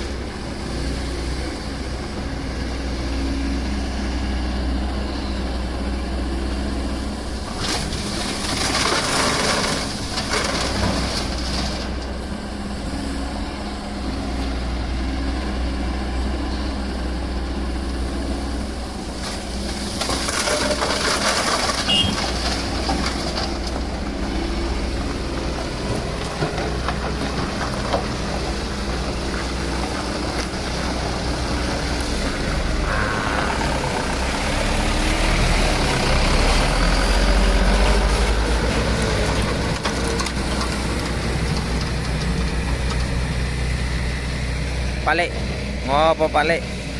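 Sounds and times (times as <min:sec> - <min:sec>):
excavator diesel engine running: 0:00.0 - 0:46.9
rushing noise: 0:31.8 - 0:38.2.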